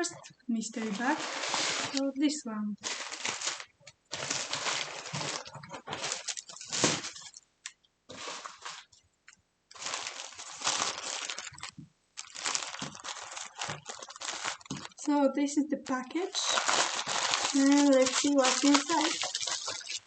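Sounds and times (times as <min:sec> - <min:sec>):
plastic packaging crinkling: 0:00.0 - 0:07.5, 0:08.1 - 0:09.0, 0:09.7 - 0:15.2, 0:16.0 - 0:20.0.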